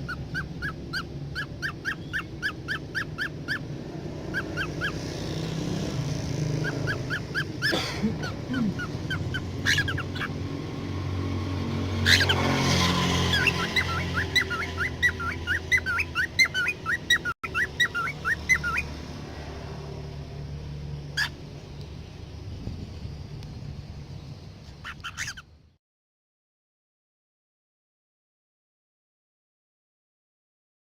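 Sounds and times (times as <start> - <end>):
budgerigars chirping: 0.0 - 5.7, 6.4 - 10.9, 11.7 - 19.0, 21.1 - 21.4, 24.6 - 25.7.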